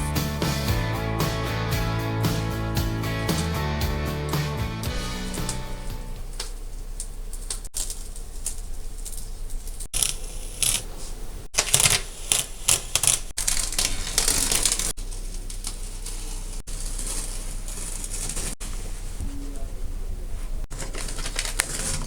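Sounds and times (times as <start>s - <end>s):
tape peeling with crackling rips: 11.6s - 18.6s, 20.8s - 22.0s.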